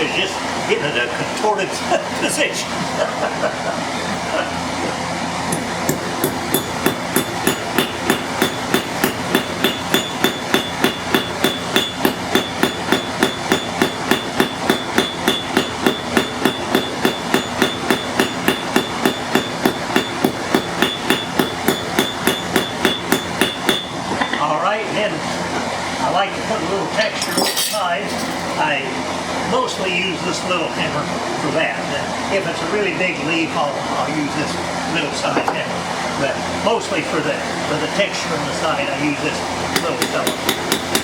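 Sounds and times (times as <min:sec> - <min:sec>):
hammer striking steel on anvil: 0:05.5 - 0:24.4, 0:39.8 - 0:41.0.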